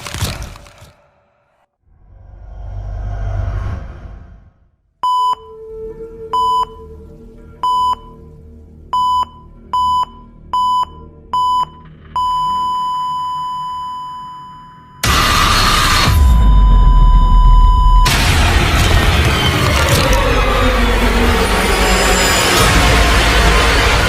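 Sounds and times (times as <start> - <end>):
long held beep: 5.0 - 5.7, 6.3 - 6.9, 9.0 - 18.1
short electronic beeps: 9.0 - 15.0.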